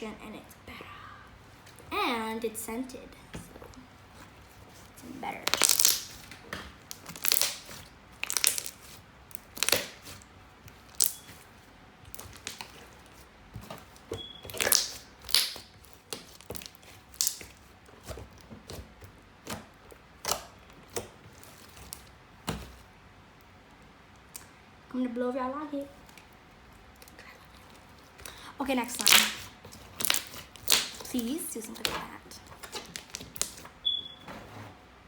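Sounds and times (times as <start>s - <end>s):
slime squished by hand: 4.5s - 11.4s, 12.1s - 22.7s, 28.0s - 33.7s
wet pops and crackles: 5.4s - 10.1s, 10.7s - 11.3s, 12.1s - 12.8s, 14.4s - 17.6s, 28.2s - 32.0s.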